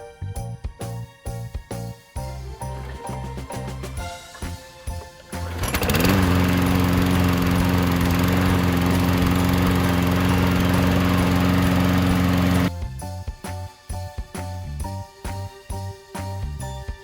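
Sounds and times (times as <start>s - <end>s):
lawn mower engine running: 4.4s - 12.7s.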